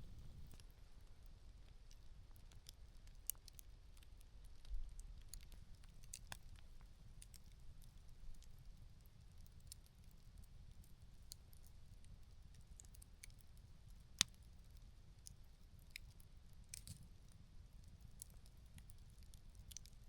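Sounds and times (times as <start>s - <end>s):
low steady rumble: 0.0s - 0.6s
campfire crackling: 5.2s - 20.0s.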